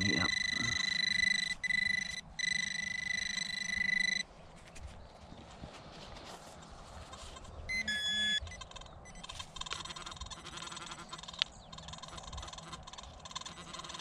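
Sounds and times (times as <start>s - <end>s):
metal detector tone: 0.0s - 4.3s, 7.7s - 9.9s.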